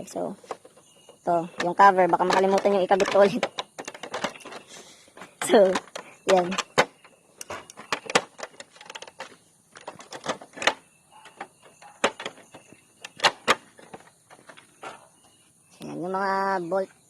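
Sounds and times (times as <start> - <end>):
clicks of panels being fitted: 1.6 - 15.0.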